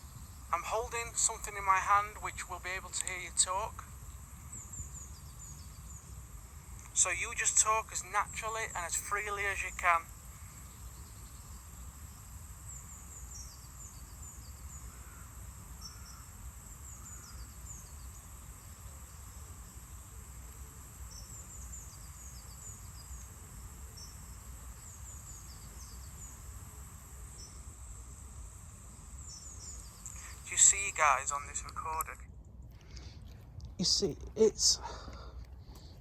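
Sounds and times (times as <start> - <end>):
faint high hiss: 0.0 - 32.3.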